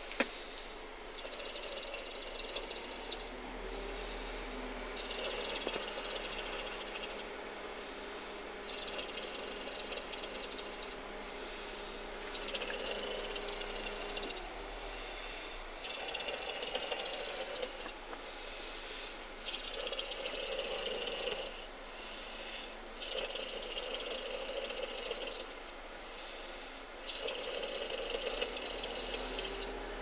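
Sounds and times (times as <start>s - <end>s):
quiet breathing: 0.0s - 30.0s
person snoring: 1.2s - 3.3s, 5.0s - 7.2s, 8.7s - 11.0s, 12.3s - 14.6s, 15.8s - 17.9s, 19.5s - 21.7s, 23.0s - 25.7s, 27.1s - 29.8s.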